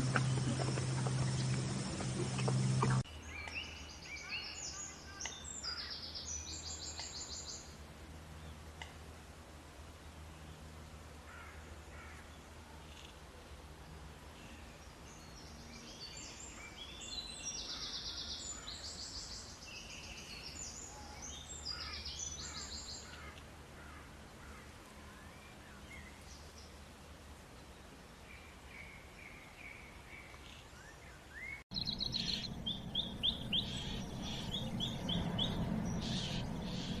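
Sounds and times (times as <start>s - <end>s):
low background rumble: 0.0s - 3.1s, 31.7s - 37.0s
birds calling in rapid pulses: 0.0s - 7.7s, 15.2s - 24.6s, 28.8s - 37.0s.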